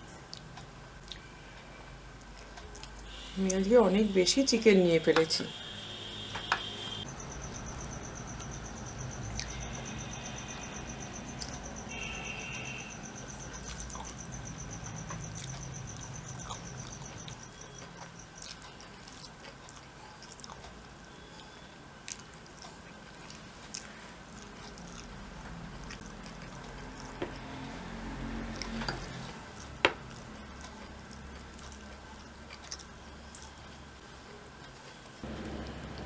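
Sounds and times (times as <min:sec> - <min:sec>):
chewing and wet squishing food: 0:00.2 - 0:01.3, 0:11.2 - 0:33.9.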